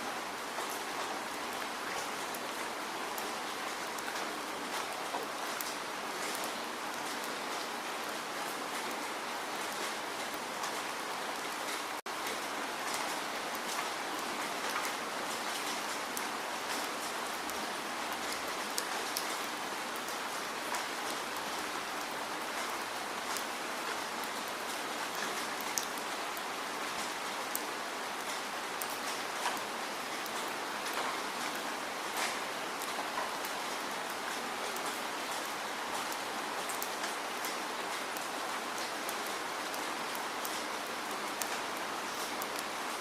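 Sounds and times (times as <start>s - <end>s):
steady rain hiss: 0.0s - 43.0s
raindrop ticks: 11.6s - 42.8s.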